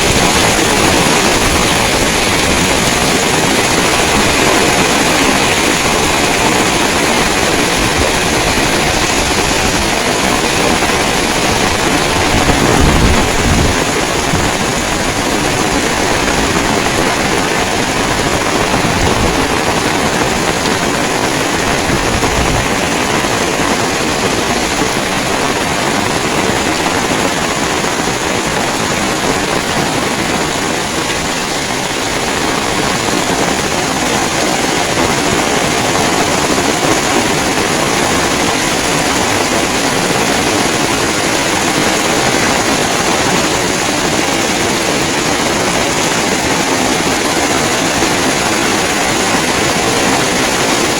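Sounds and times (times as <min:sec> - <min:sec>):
heavy rain falling: 0:00.0 - 0:50.9
wind buffeting microphone: 0:00.0 - 0:50.9.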